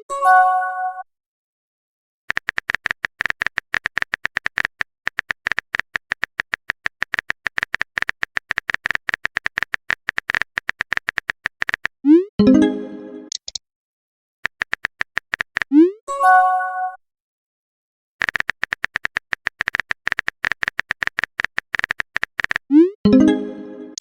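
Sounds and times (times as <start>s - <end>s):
phone keyboard typing clicks: 2.3s - 12.0s, 13.3s - 13.6s, 14.4s - 15.8s, 18.2s - 22.7s.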